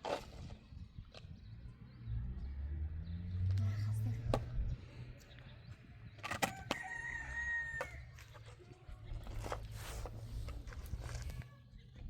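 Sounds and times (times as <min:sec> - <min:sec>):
rooster crowing: 0:06.5 - 0:08.1.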